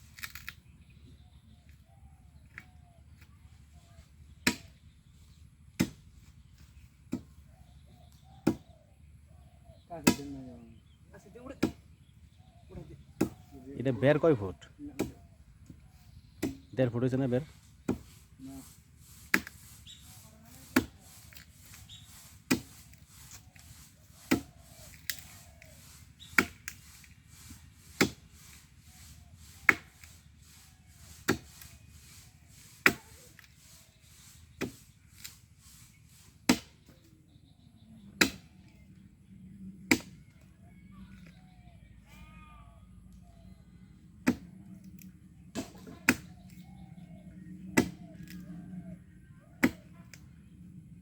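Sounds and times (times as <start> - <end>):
axe chopping tree trunk: 4.4 - 4.8, 5.7 - 7.4, 8.4 - 8.8, 10.0 - 10.6, 11.5 - 11.9, 13.2 - 13.5, 14.9 - 16.8, 17.8 - 18.2, 19.0 - 37.1, 38.0 - 38.9, 39.8 - 40.5, 44.1 - 48.5, 49.6 - 50.2.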